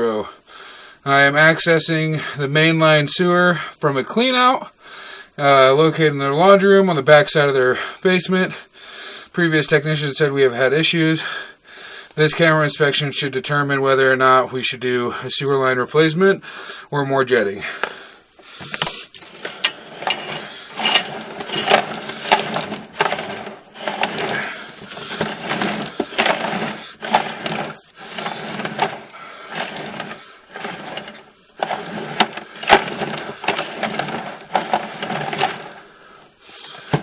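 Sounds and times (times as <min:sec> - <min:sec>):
cable rattling and knocking in pipe: 0:18.6 - 0:35.9, 0:36.7 - 0:37.0.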